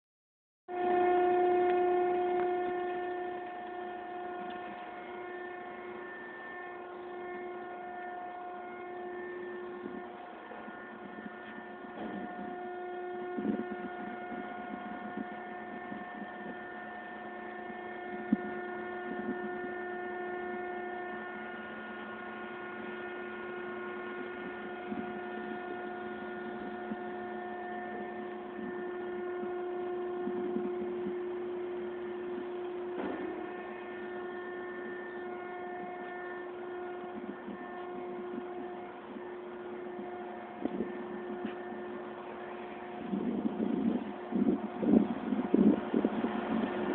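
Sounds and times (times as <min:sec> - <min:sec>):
wind howling: 0:24.3 - 0:46.9.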